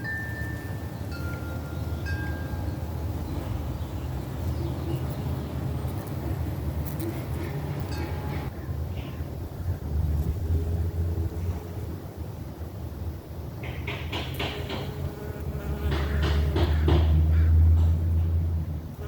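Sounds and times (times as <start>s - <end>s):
wind chimes ringing: 0.0s - 2.9s.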